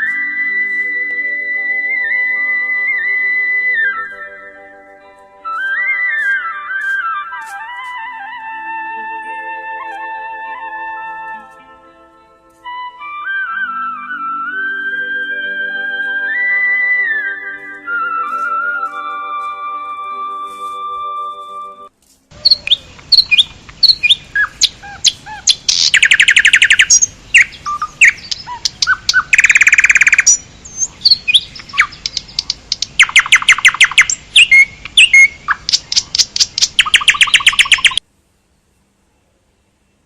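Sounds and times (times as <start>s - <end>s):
birds chirping: 22.3s - 38.0s
bird trills: 22.4s - 38.0s.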